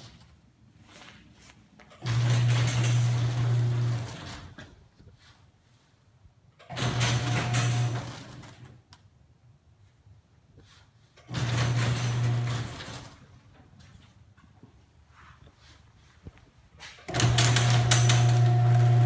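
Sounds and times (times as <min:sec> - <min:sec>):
garage door rattling: 0:01.9 - 0:04.8, 0:06.6 - 0:08.8, 0:11.2 - 0:13.6, 0:17.0 - 0:18.8
garage door opener motor humming: 0:02.0 - 0:04.6, 0:06.6 - 0:08.7, 0:11.3 - 0:13.2, 0:17.1 - 0:19.0.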